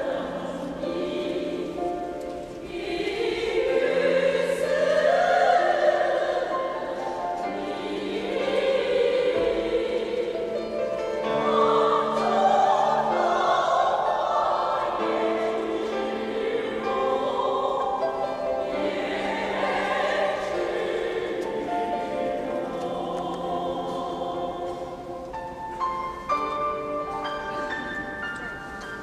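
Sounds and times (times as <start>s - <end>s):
choir singing: 0.0s - 29.0s.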